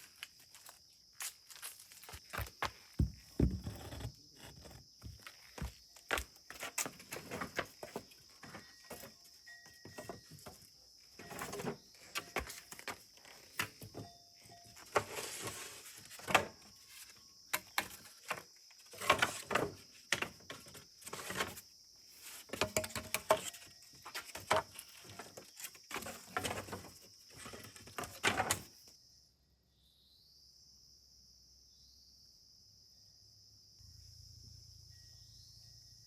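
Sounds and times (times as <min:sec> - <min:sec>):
crickets chirring: 0:00.0 - 0:36.0
knocks and clatter of handling: 0:02.2 - 0:16.8, 0:17.5 - 0:21.6, 0:22.4 - 0:28.7.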